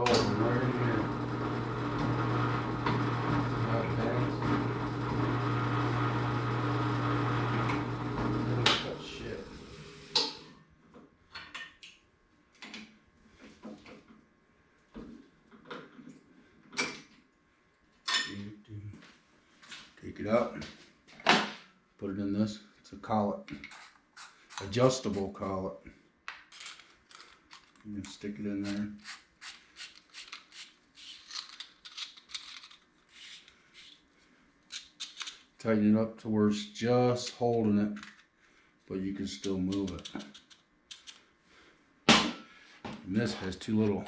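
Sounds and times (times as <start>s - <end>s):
small clicks and scrapes of drill collet: 28.7s - 35.4s, 39.7s - 41.2s.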